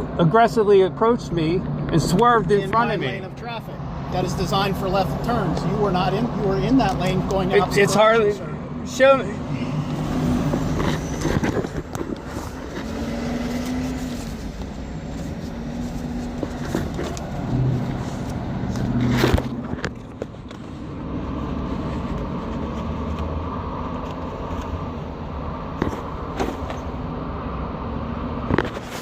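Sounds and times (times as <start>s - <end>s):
road traffic passing: 0.0s - 29.0s.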